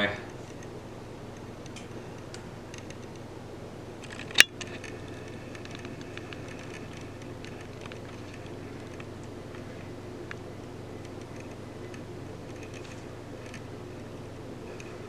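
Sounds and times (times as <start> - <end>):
steady low hum: 0.0 - 15.0
faint ticks and tapping: 4.0 - 15.0.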